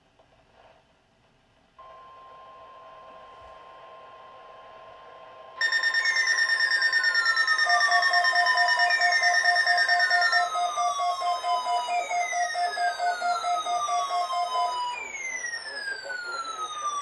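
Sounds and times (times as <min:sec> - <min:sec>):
falling alarm sweep: 0:05.6 - 0:17.0
layered electronic alarm: 0:05.6 - 0:17.0
rapid pulsing beep: 0:05.6 - 0:17.0.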